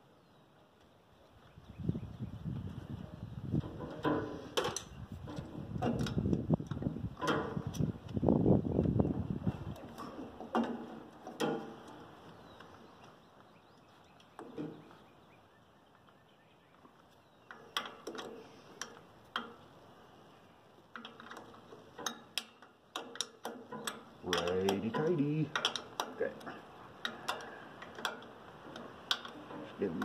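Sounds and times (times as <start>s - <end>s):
metallic clicks of hand tools: 21.0s - 29.4s.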